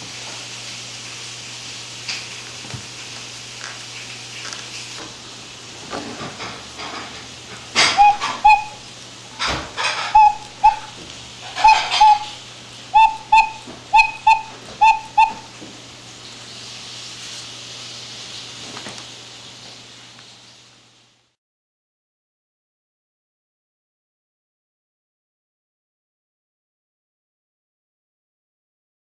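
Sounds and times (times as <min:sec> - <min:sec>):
cuckoo clock calls: 0:07.8 - 0:08.9, 0:10.1 - 0:15.6.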